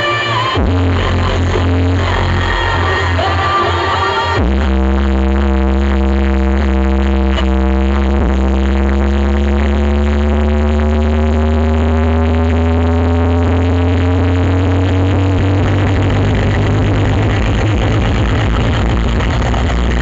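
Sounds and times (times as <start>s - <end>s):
loud electronic dance music: 0.0s - 20.0s
rising synth tone: 8.5s - 20.0s.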